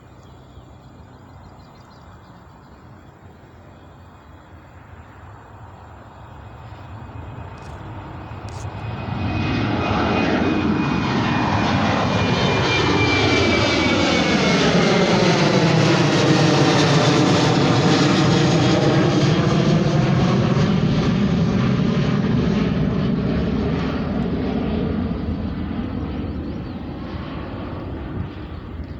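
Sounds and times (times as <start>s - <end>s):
jet engines passing with whine: 0.0s - 28.9s.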